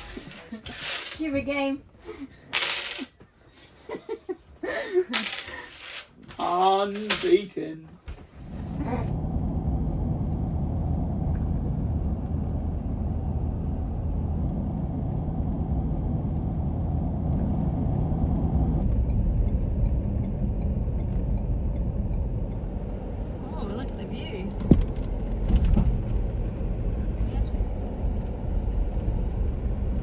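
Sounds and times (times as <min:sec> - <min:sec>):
car engine and road noise: 0:06.2 - 0:30.0.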